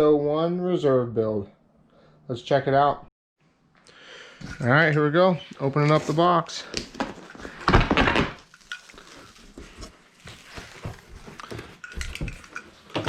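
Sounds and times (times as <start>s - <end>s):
packing rustling and scraping: 4.4s - 13.0s
cardboard box being opened: 9.0s - 11.8s.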